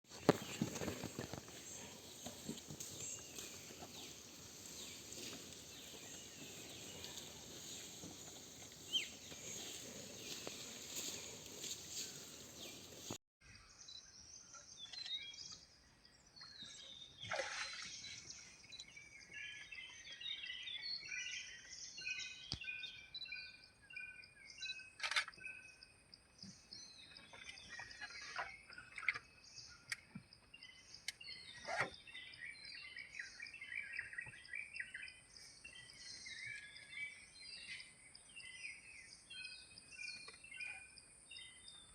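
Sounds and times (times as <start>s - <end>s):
outdoor background noise: 0.0s - 41.9s
small birds chirping: 0.1s - 13.2s.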